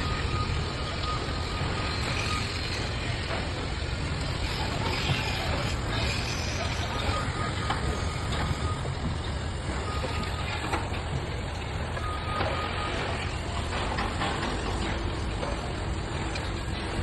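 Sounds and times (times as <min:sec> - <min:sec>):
high warning beep: 0:00.0 - 0:02.9, 0:06.9 - 0:11.0, 0:11.9 - 0:14.0
heavy machinery engine running: 0:00.0 - 0:17.0.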